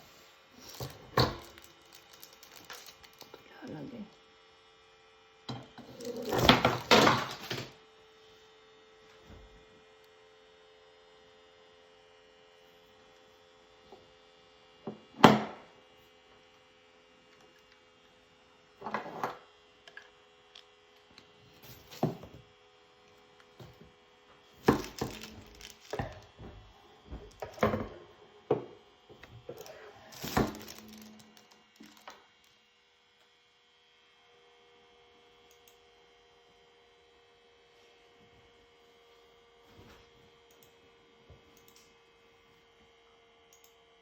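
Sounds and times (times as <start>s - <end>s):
faint electrical hum: 0.0s - 44.0s
objects knocking and clattering: 0.6s - 3.3s, 5.5s - 7.8s, 21.7s - 22.4s, 24.6s - 28.8s, 29.4s - 32.2s.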